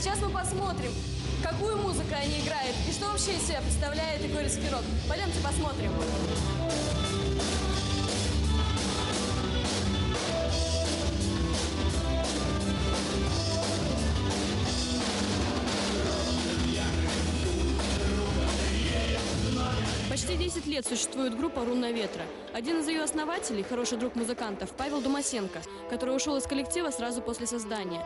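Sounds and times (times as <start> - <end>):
heavy bass: 0.0 - 20.6
drum kit steady beat: 0.0 - 20.7.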